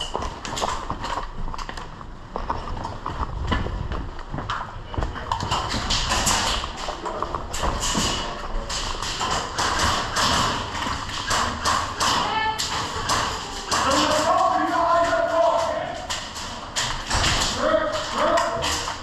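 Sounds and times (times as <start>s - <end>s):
footsteps on a hard floor: 0.0s - 5.9s.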